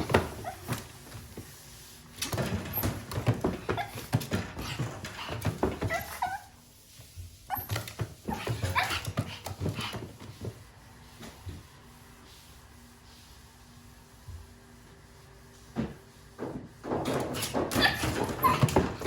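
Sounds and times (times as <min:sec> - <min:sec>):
puppy whining and yipping: 0:00.1 - 0:00.8, 0:05.4 - 0:06.5, 0:07.5 - 0:09.1, 0:17.8 - 0:19.0
knocks and scuffling: 0:15.6 - 0:19.0.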